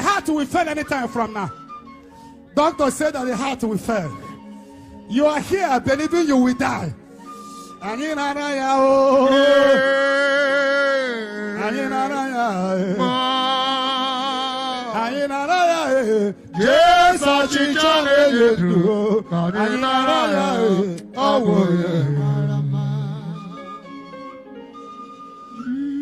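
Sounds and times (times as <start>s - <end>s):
person chanting devotional melody: 5.0s - 24.1s, 25.5s - 26.0s.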